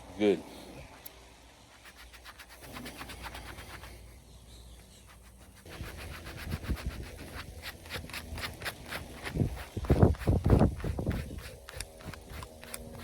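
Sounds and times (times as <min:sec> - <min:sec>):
metal scratcher rasping on rubber: 0:01.7 - 0:04.0, 0:05.0 - 0:13.0.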